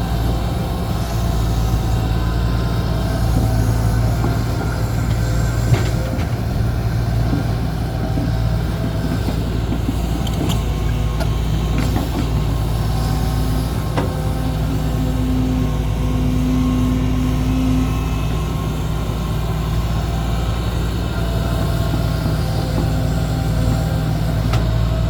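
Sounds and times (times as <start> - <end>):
heavy diesel engines running: 0.0 - 25.0
metal knocks and clanks: 23.6 - 25.0.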